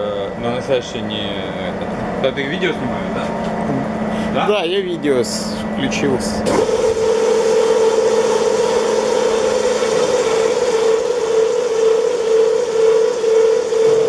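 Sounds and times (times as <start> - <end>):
polishing machine humming: 6.4 - 14.0.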